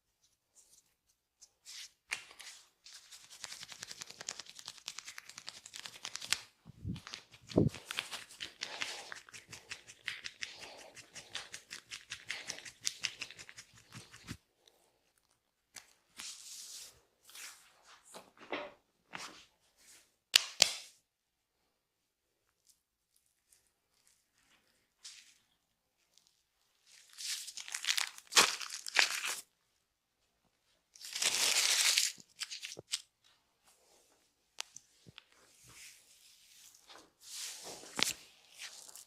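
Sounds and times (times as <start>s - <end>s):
hands rubbing and tapping skin: 0.6s - 14.4s, 37.6s - 39.0s.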